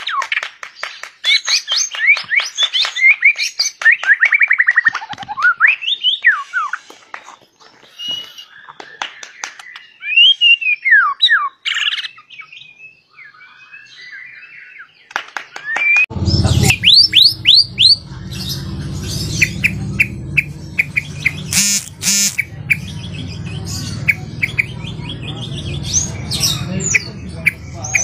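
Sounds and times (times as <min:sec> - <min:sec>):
songbird singing: 0:05.4 - 0:15.2, 0:16.2 - 0:28.0
low background hum: 0:16.1 - 0:28.0.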